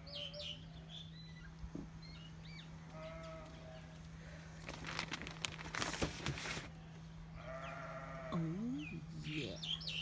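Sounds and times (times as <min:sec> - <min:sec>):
rustling and crackling: 0:04.6 - 0:06.8
sheep bleating: 0:07.4 - 0:08.6.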